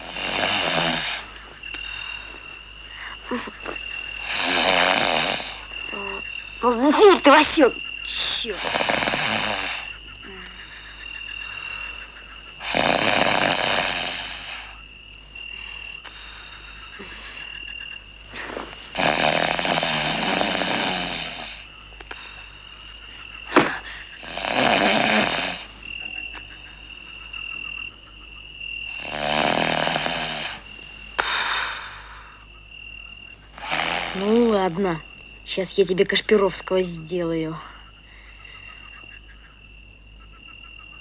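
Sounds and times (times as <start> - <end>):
person snoring loudly: 0.0 - 1.3, 4.2 - 6.2, 8.6 - 9.9, 12.6 - 14.8, 18.4 - 21.6, 23.5 - 25.7, 28.9 - 30.6, 33.6 - 34.5.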